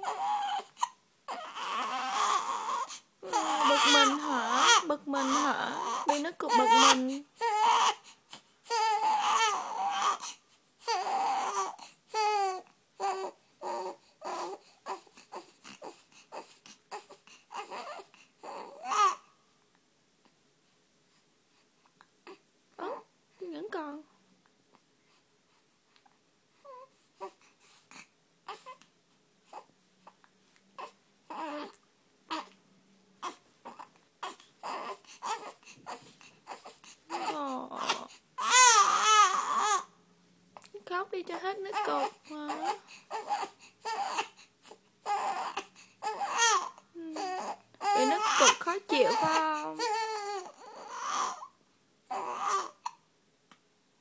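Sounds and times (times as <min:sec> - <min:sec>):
baby crying: 0:00.0 - 0:19.3, 0:30.8 - 0:32.6, 0:33.2 - 0:39.9, 0:41.6 - 0:51.5, 0:52.1 - 0:53.0
child wailing: 0:03.3 - 0:07.9, 0:46.1 - 0:50.3.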